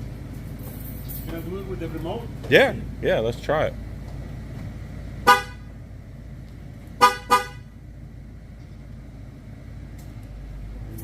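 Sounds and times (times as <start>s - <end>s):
car horn chirping: 5.2s - 5.8s, 7.0s - 7.8s.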